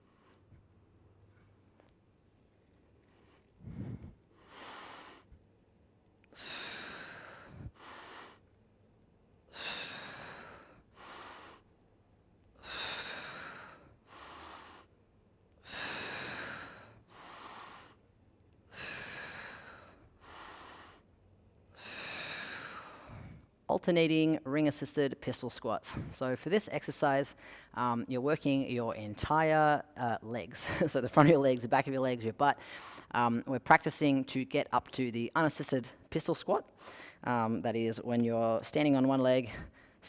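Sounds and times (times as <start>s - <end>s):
person breathing hard: 3.1s - 5.4s, 6.3s - 8.5s, 9.5s - 11.7s, 12.6s - 14.9s, 15.6s - 18.0s, 18.7s - 21.1s, 21.7s - 23.6s, 27.4s - 27.8s, 32.6s - 33.1s, 36.8s - 37.2s.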